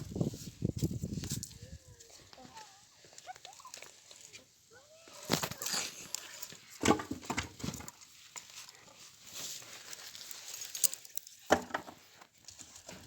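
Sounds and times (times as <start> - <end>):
firewood knocking and clacking: 11.5 - 12.0.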